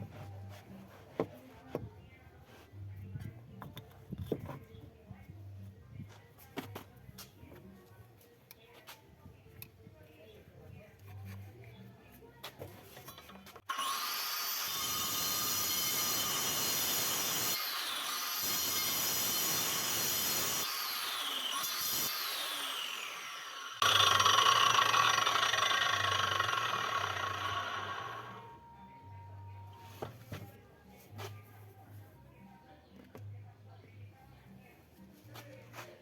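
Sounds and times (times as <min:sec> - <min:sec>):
angle grinder whining: 0:13.7 - 0:28.6.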